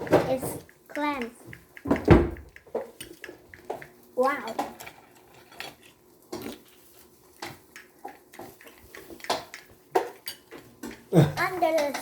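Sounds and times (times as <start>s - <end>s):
tableware clinking: 7.4s - 12.0s.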